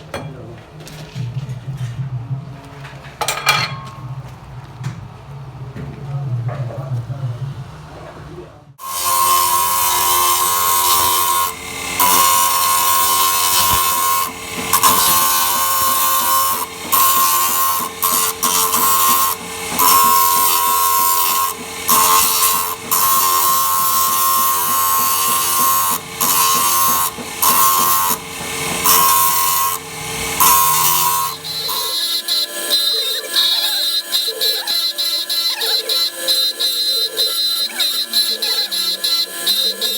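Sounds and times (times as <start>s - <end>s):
gear teeth grinding screech: 8.8s - 39.9s.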